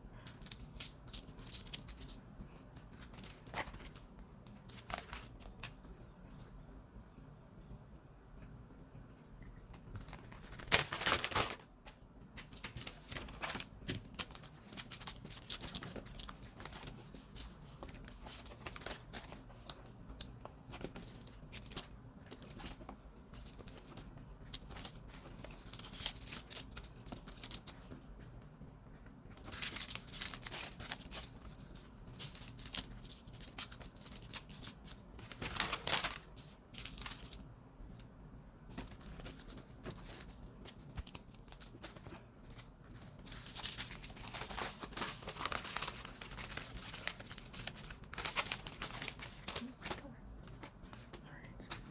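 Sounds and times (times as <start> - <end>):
plastic bags crinkling: 10.3 - 11.7, 29.4 - 37.4, 43.2 - 50.1.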